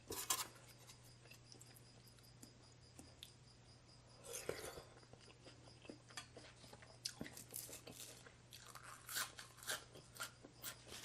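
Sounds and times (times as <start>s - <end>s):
chewing crisp food: 4.3s - 11.0s.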